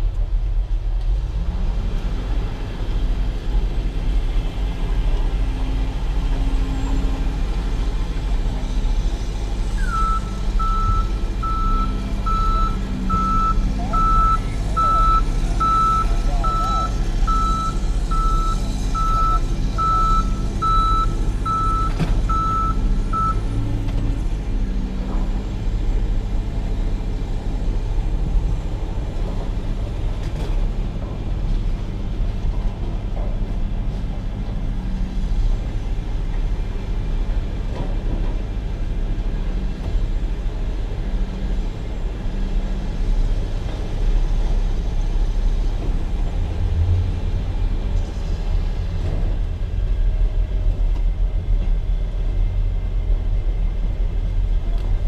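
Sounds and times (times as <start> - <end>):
heavy engine rumbling: 0.0 - 55.0
reversing alarm beeping: 9.8 - 23.5.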